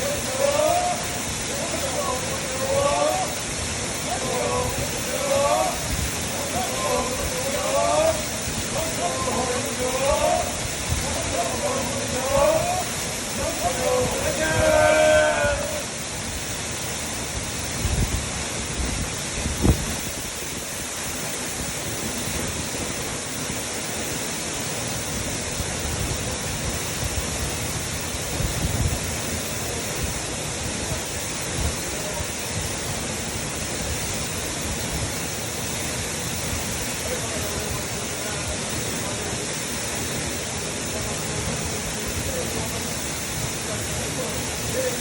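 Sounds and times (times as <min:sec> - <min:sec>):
waterfall rushing: 0:00.0 - 0:45.0.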